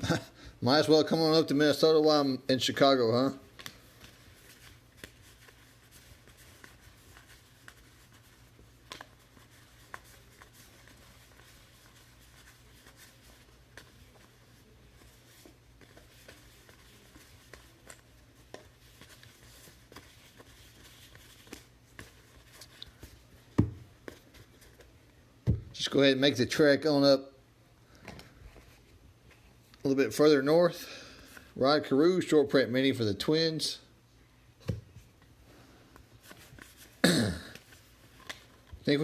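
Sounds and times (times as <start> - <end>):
cards clicking and rustling: 3.4 - 23.2, 37.5 - 38.8.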